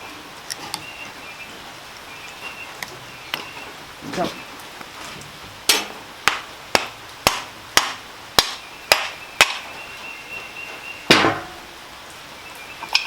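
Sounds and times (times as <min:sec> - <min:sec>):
hammer tapping on metal: 0:05.7 - 0:09.6.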